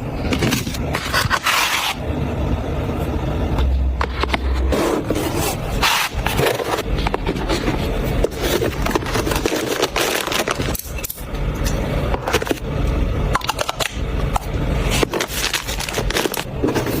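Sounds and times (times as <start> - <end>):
packaging scraping and crackling: 4.7 - 11.2, 14.8 - 17.0.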